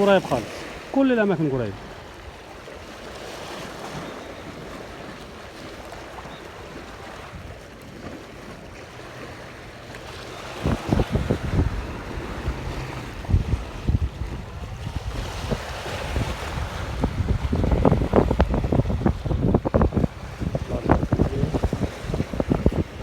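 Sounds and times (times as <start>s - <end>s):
sea water washing: 0.0s - 23.0s
wind buffeting microphone: 0.0s - 23.0s.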